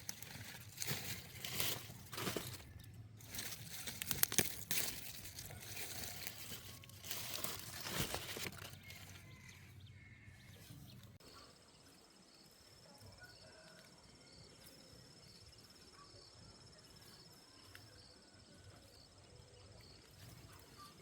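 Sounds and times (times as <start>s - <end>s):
rustling and crunching: 0.0s - 9.7s.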